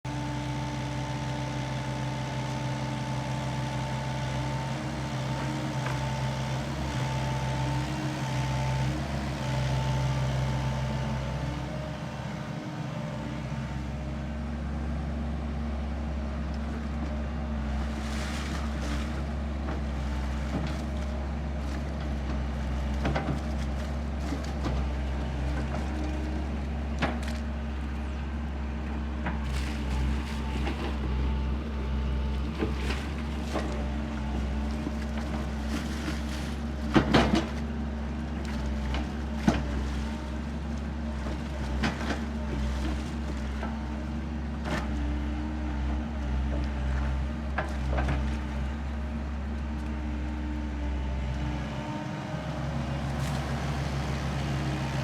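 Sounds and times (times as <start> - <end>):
excavator diesel engine under load: 0.0 - 55.0.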